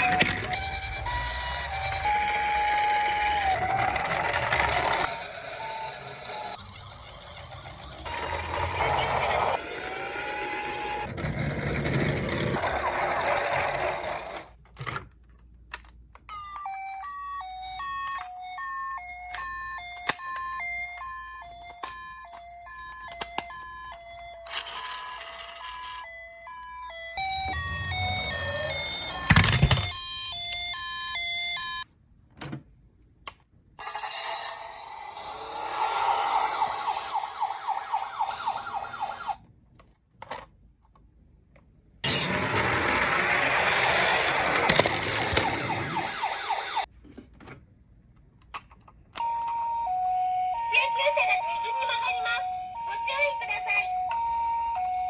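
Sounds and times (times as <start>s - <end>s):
two-tone ambulance siren: 0.0s - 6.6s, 8.0s - 11.1s, 16.6s - 31.8s, 33.9s - 39.4s, 42.0s - 46.9s, 49.2s - 55.0s
siren in a fast yelp: 35.5s - 39.4s, 43.8s - 46.9s, 50.6s - 54.0s.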